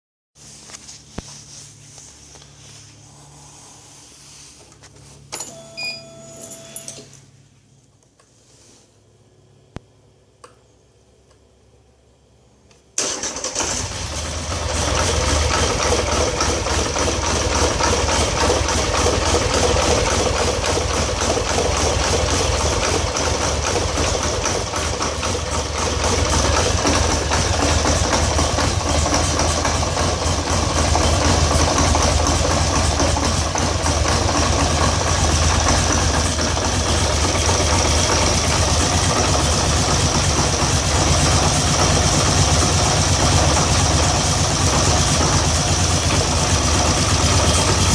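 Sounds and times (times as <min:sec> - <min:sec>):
atv engine starting and idling: 0:13.0 - 0:47.9.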